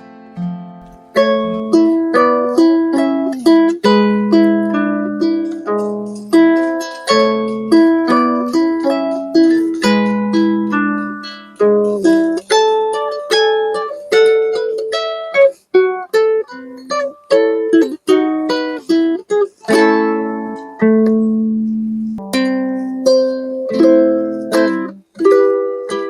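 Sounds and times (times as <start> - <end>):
plucked string instrument melody: 0.0 - 26.0.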